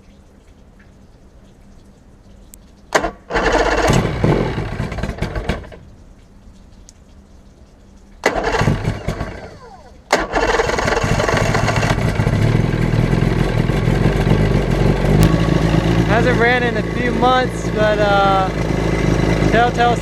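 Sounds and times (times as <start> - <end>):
outboard motor starting and running: 3.0 - 6.0, 8.2 - 20.0.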